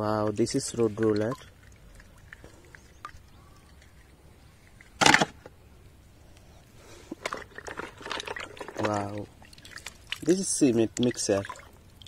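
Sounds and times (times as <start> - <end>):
water splashing over plastic toy: 0.6 - 5.2, 7.2 - 12.0.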